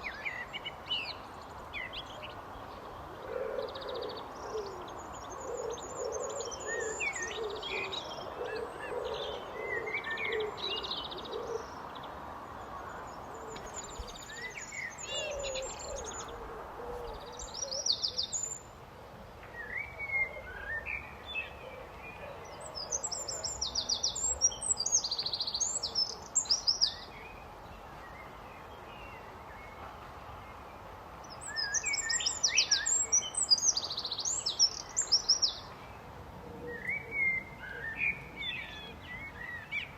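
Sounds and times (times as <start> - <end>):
blackbird singing: 0.0 - 12.0, 12.9 - 16.4, 17.0 - 18.7, 19.6 - 29.8, 31.3 - 35.8, 36.7 - 39.9
low cooing: 15.1 - 17.8.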